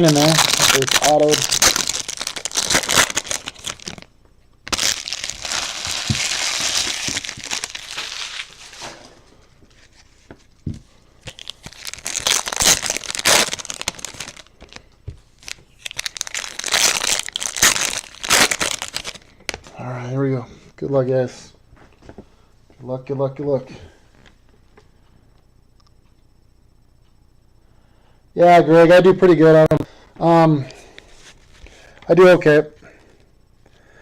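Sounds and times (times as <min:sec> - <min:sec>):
foil wrappers crinkling and tearing: 0:00.0 - 0:09.2, 0:11.2 - 0:19.7.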